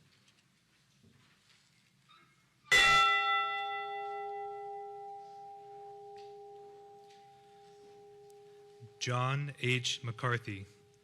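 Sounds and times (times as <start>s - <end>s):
bell tolling: 2.7s - 9.1s.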